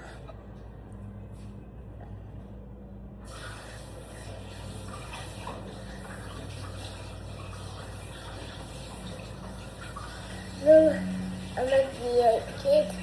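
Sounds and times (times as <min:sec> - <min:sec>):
low steady hum: 0:00.0 - 0:13.0
water running in a stream: 0:03.3 - 0:13.0.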